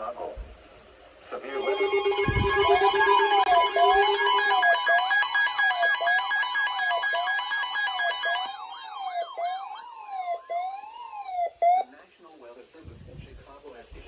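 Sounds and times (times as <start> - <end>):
rising and falling alarm tone: 1.2 - 11.8
pulsing beeps: 1.3 - 9.9.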